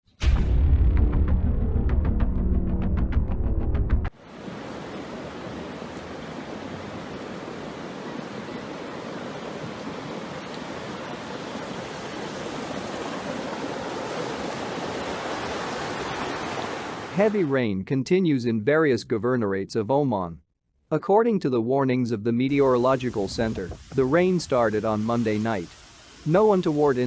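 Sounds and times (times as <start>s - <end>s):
music: 0.1s - 4.1s
rushing floodwater and downpour: 4.2s - 17.5s, 22.5s - 27.0s.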